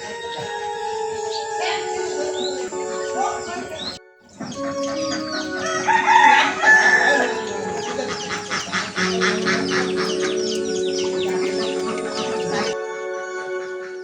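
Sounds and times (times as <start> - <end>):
quick clucking calls: 0.0 - 12.8
background music with held notes: 0.0 - 14.0
rooster crowing: 4.6 - 12.8.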